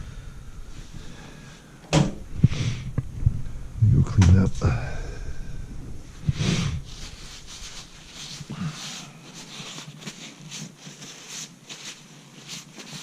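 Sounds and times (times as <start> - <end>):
light rustling: 5.8 - 13.0
breath or sniff: 6.3 - 9.8.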